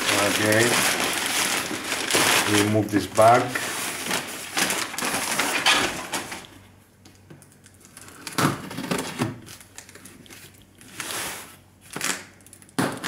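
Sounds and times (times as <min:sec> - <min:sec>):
packaging rustling: 0:00.0 - 0:06.6.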